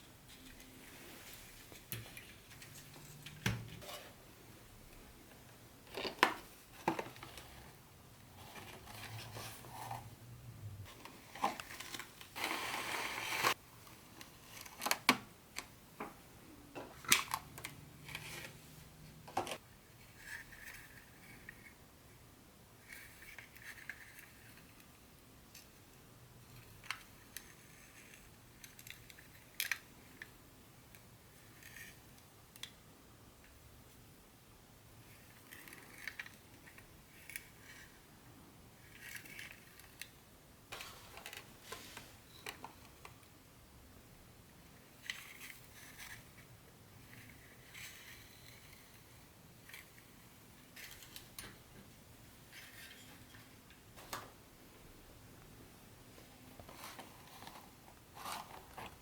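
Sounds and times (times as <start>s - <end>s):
packaging rustling scrape: 10.9s - 13.6s.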